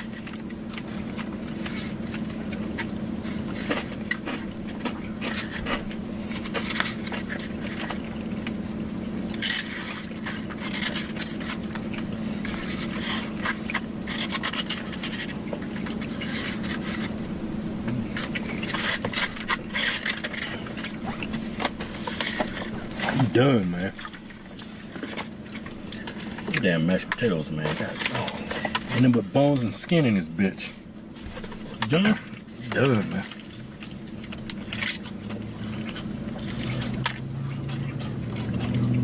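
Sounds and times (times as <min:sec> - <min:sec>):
chewing crackling bites: 0:00.0 - 0:23.4
steady low hum: 0:00.0 - 0:39.0.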